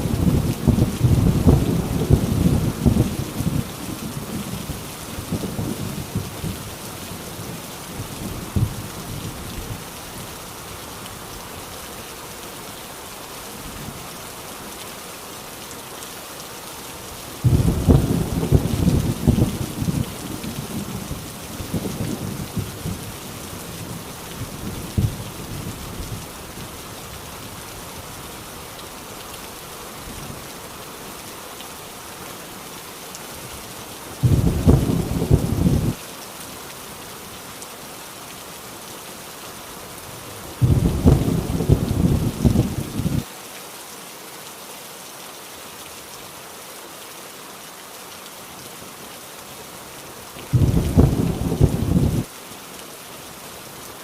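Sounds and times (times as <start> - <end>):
heavy rain falling: 0.0 - 54.0
loud thunderclaps: 17.4 - 20.1, 34.2 - 36.0, 40.6 - 43.2, 50.5 - 52.3
low thunder rumble: 17.4 - 23.1, 34.2 - 36.0, 40.6 - 43.2, 50.5 - 52.3.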